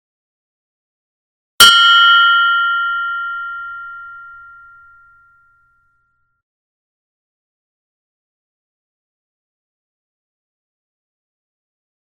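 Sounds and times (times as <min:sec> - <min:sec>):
meditation bell ringing: 0:01.6 - 0:06.3.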